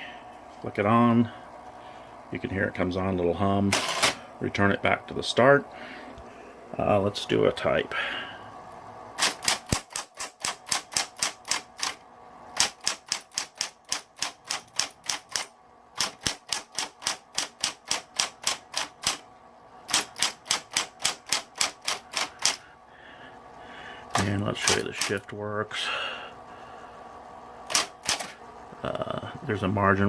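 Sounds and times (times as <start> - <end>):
faint motor hum: 0.0 - 30.0
typewriter keystrokes: 3.7 - 4.2, 9.2 - 12.0, 12.6 - 19.2, 19.9 - 22.6, 24.2 - 25.2, 27.7 - 28.4.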